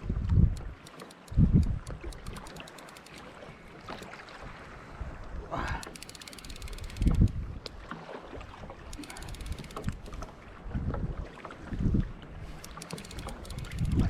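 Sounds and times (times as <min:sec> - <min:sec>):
wind buffeting microphone: 0:00.0 - 0:02.6, 0:06.4 - 0:07.9, 0:08.5 - 0:14.0
faint ticks: 0:00.2 - 0:04.2, 0:05.7 - 0:07.8, 0:08.9 - 0:10.3, 0:12.5 - 0:14.0.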